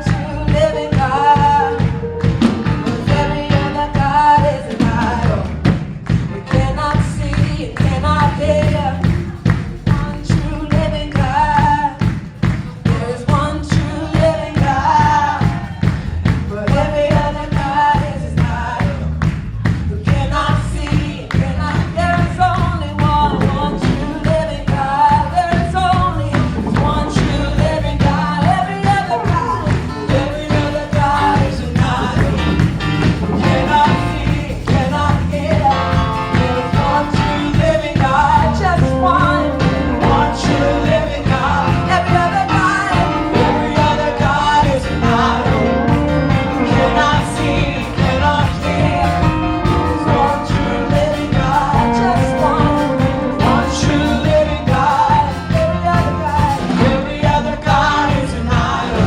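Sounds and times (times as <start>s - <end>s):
live band playing upbeat song: 0.0s - 59.0s
person singing: 0.0s - 59.0s.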